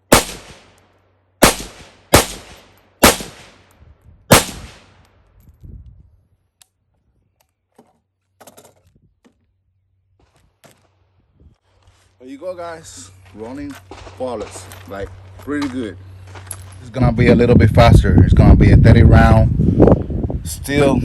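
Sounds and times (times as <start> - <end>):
rifle shots: 0.0 - 0.8, 1.4 - 3.7, 4.3 - 5.0.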